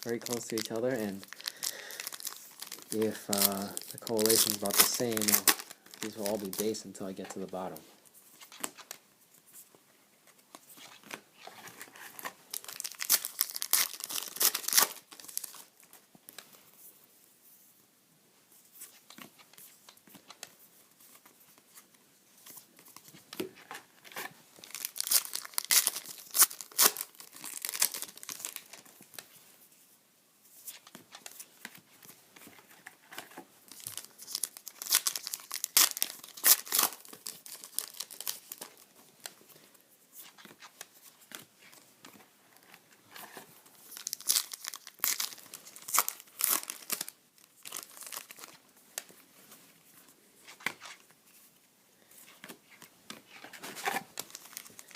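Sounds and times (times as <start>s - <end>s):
wrappers tearing and crinkling: 0.0s - 7.0s, 10.8s - 15.9s, 24.0s - 28.9s, 33.7s - 38.9s, 43.3s - 48.6s, 52.7s - 54.9s
card handling: 0.0s - 7.7s.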